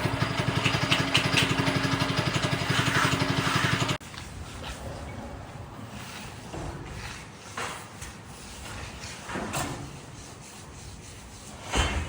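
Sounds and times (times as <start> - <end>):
tool scraping over concrete: 0.0 - 12.0.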